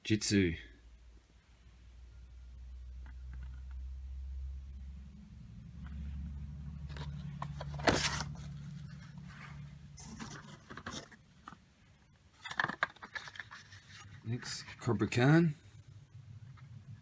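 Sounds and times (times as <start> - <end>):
steady low hum: 0.8 - 17.0.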